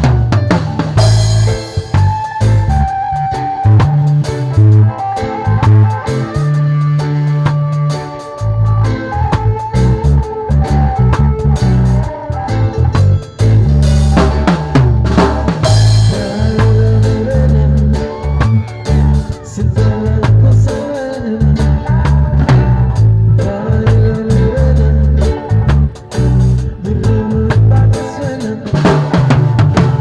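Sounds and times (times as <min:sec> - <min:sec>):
pulsing bass line: 0:00.0 - 0:28.3
drum kit: 0:00.0 - 0:30.0.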